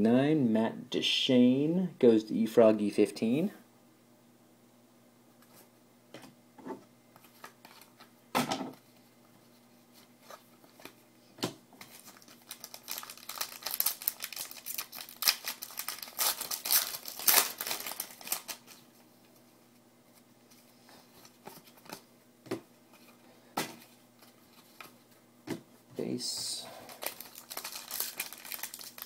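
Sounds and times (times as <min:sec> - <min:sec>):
card pack wrapper crinkling and tearing: 0:11.8 - 0:18.9, 0:26.9 - 0:29.0.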